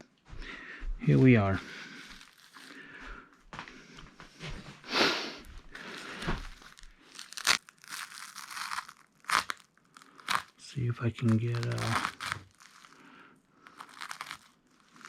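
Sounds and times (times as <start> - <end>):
plastic packaging crinkling and tearing: 1.7 - 3.1, 5.4 - 15.0.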